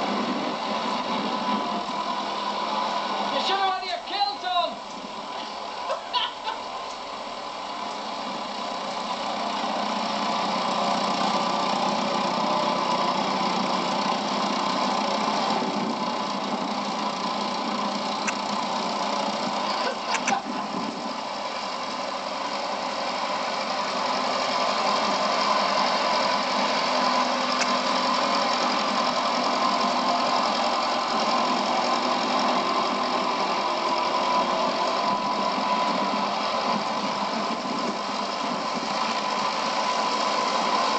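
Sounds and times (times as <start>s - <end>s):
tractor diesel engines running: 0.0s - 40.9s.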